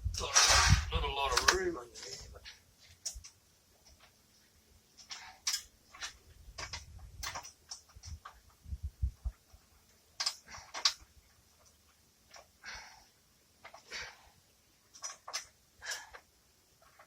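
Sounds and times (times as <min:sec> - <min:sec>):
metal tools clicking and clinking: 0:05.0 - 0:08.4.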